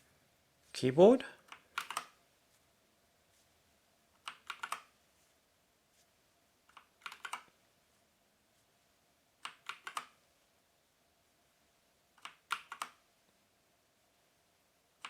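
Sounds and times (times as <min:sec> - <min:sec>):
mechanical keyboard keys clicking: 0:01.5 - 0:02.1, 0:04.2 - 0:04.9, 0:06.7 - 0:07.5, 0:09.4 - 0:10.1, 0:12.2 - 0:13.0.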